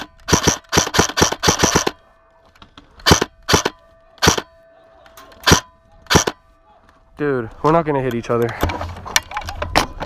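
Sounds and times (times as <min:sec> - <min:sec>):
airsoft gun firing: 0:00.0 - 0:02.0, 0:03.0 - 0:04.5, 0:05.4 - 0:06.4.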